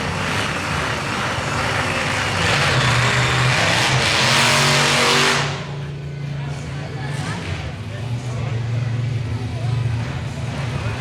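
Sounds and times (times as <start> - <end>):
monster truck engine revving: 0.0 - 11.0.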